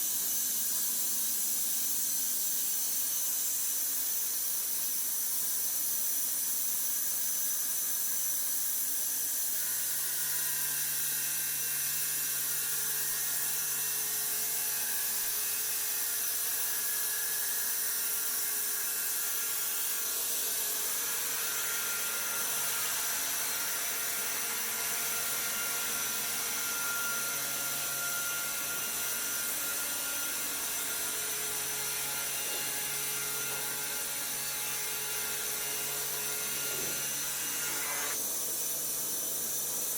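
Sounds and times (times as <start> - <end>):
woodworking machine whining: 9.6 - 39.9.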